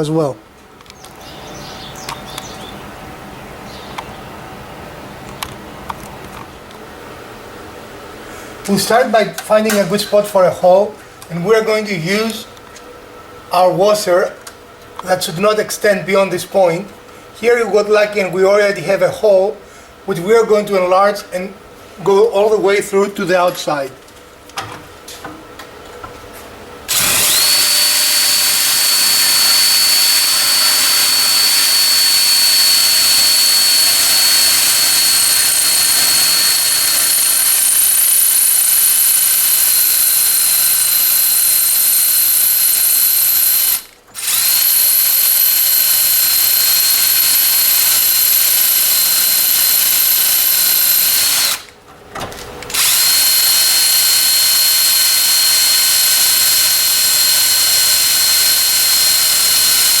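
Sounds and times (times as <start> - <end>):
electric drill boring through door: 26.9 - 51.7, 52.7 - 60.0.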